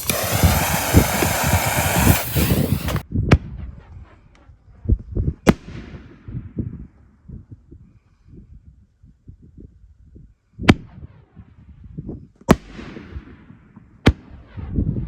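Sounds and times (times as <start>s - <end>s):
firework reports: 0.0s - 3.0s
loud steady hiss: 0.0s - 3.0s.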